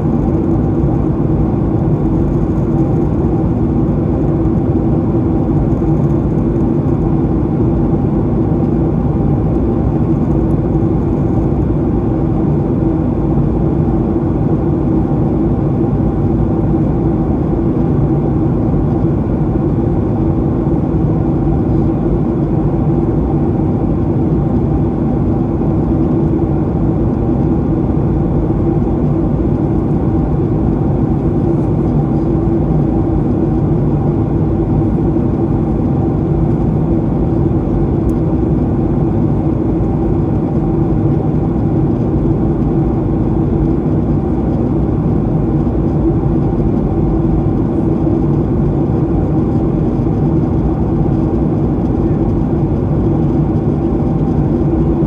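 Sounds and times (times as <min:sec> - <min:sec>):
airplane cabin engine rumble: 0:00.0 - 0:55.0
airflow over fuselage: 0:14.1 - 0:55.0.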